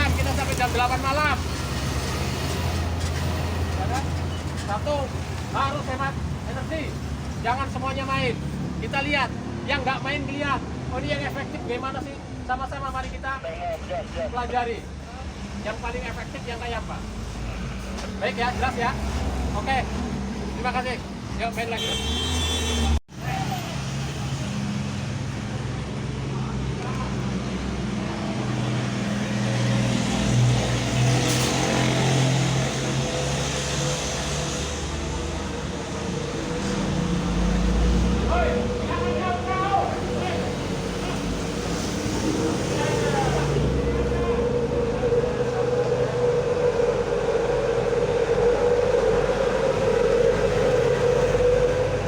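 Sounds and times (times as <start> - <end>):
vehicle engines running: 0.0 - 13.0, 23.1 - 52.0
mechanical drone: 28.5 - 52.0.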